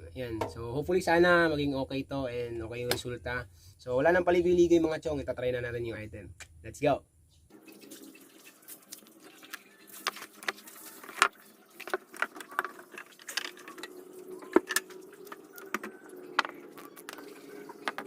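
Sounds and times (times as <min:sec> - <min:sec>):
small hard objects clattering: 0:07.6 - 0:18.0.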